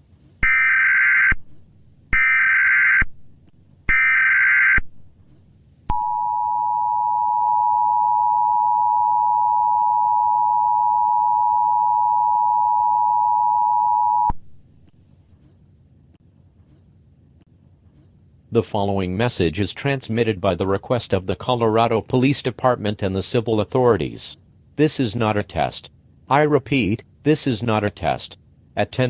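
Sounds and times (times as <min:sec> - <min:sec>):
two-tone attention signal: 0:05.9 - 0:14.3
data tone bursts: 0:05.9 - 0:14.4.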